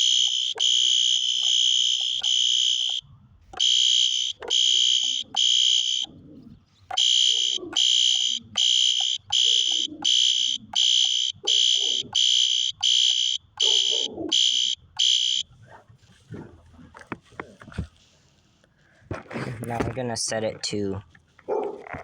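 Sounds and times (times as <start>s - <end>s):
pulsing fire alarm horn: 0.0s - 3.0s, 3.6s - 6.1s, 6.9s - 15.4s.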